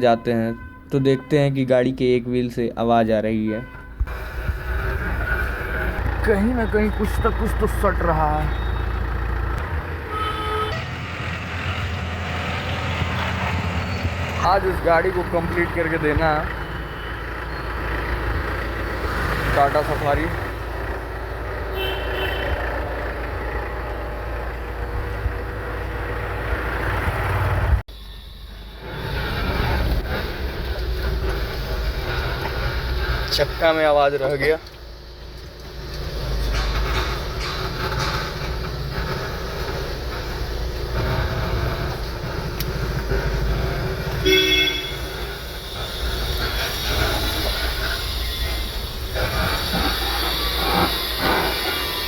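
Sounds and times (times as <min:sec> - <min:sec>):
vehicle horn toot: 0:00.0 - 0:01.7, 0:03.4 - 0:04.1, 0:10.0 - 0:11.2, 0:21.7 - 0:22.8, 0:44.2 - 0:51.1
road noise: 0:00.0 - 0:52.0
car engine running: 0:04.0 - 0:27.8, 0:29.5 - 0:52.0
wheel rubbing noise: 0:28.8 - 0:52.0.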